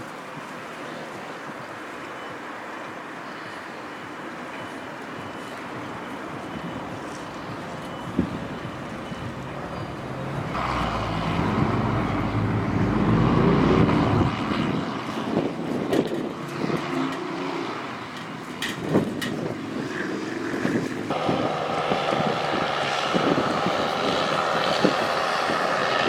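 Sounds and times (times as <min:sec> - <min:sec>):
diesel engine revving: 0:05.6 - 0:14.8.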